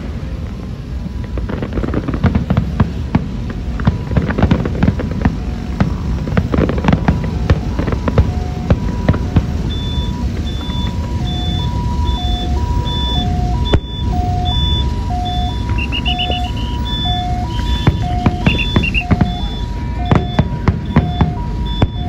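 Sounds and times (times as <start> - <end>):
firecrackers popping: 0.0 - 22.0
electronic two-tone beeping: 9.7 - 22.0
high-pitched chirps: 13.8 - 19.7.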